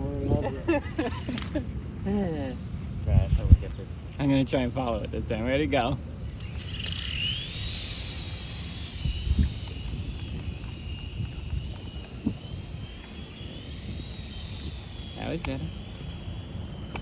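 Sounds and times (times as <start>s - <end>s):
toy aircraft motors whining: 0.6s - 4.9s, 6.2s - 17.0s
wind rumble on microphone: 2.8s - 4.0s, 8.7s - 12.7s.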